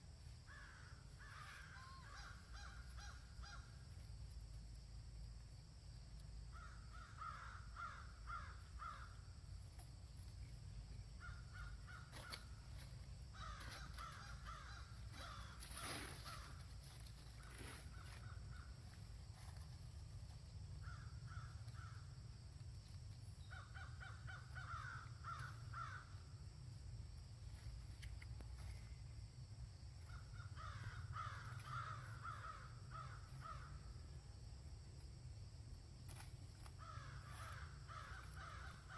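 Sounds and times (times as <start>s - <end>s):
harsh caw-like animal calls: 0.5s - 3.8s, 6.5s - 9.3s, 11.2s - 18.8s, 20.8s - 22.1s, 23.4s - 26.2s, 30.0s - 33.9s, 36.7s - 38.9s.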